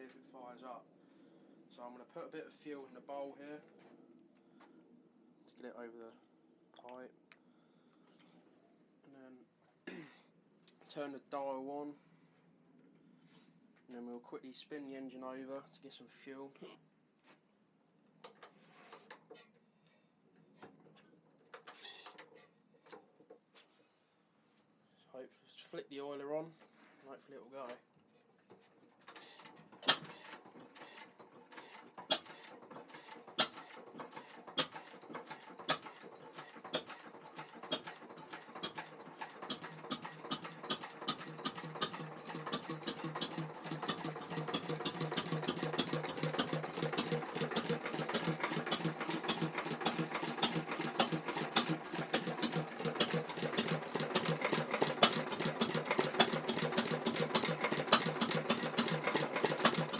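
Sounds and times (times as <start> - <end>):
stationary engine starting and clattering: 28.5 - 59.9.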